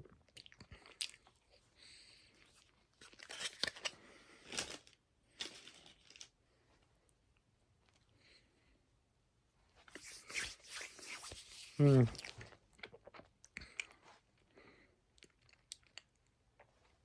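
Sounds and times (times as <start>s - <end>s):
faint rustling and crinkling: 0.6s - 7.2s, 16.6s - 17.0s.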